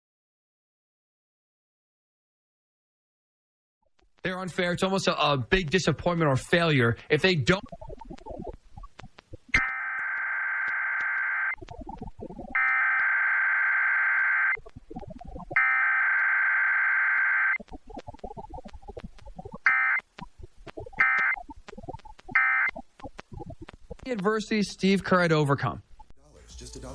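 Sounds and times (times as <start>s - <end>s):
faint broken radio audio: 3.9s - 26.9s
garbled sound: 4.0s - 26.6s
buzzing digital data warble: 7.3s - 24.1s.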